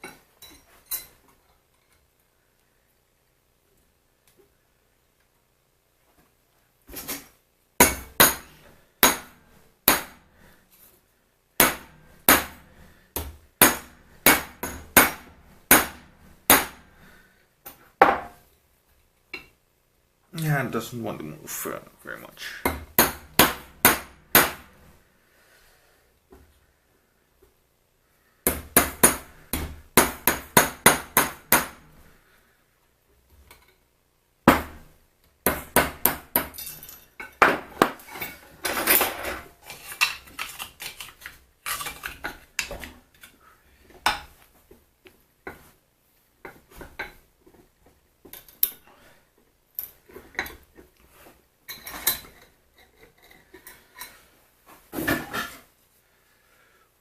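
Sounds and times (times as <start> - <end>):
metal clinking on metal: 0.0 - 1.2, 36.5 - 39.3.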